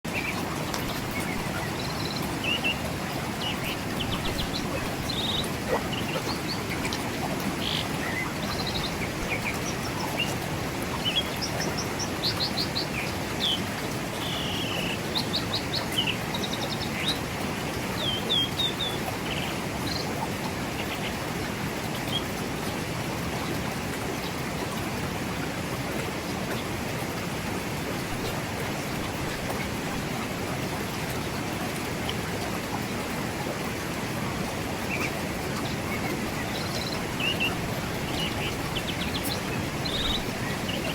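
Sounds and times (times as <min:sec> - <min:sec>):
birds chirping: 0:00.1 - 0:17.2, 0:34.9 - 0:40.9
river flowing over rocks: 0:00.1 - 0:40.9.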